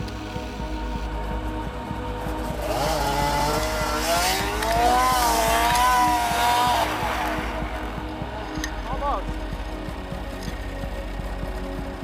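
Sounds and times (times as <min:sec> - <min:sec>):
background music with steady beat: 0:00.0 - 0:12.0
snowmobile engine revving: 0:02.6 - 0:08.2.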